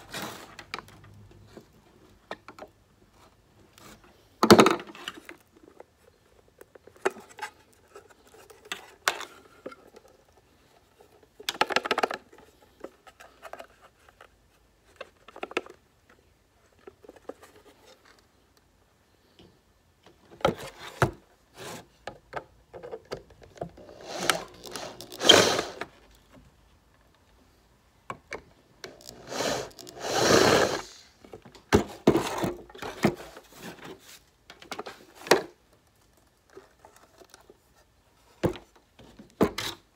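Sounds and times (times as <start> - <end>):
scraping of parts: 23.8 - 26.0, 28.8 - 31.0.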